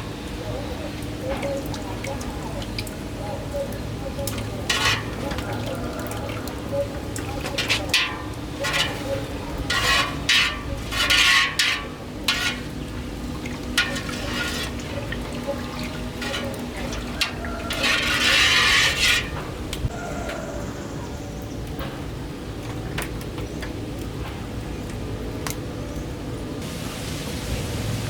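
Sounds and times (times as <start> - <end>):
stirring and scraping in cooking pot: 3.4 - 19.9.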